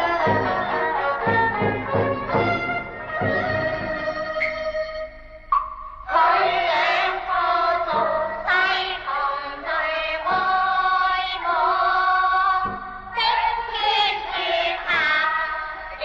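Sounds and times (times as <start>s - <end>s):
instrumental ensemble: 0.0s - 8.5s
opera singing: 6.1s - 16.0s.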